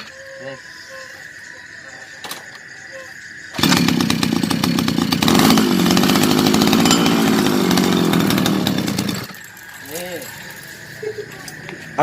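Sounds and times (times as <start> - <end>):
two-stroke engine running: 3.5 - 9.5.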